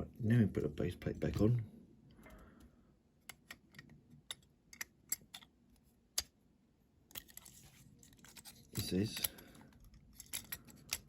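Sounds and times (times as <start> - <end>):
toy car parts clicking: 9.1 - 11.0.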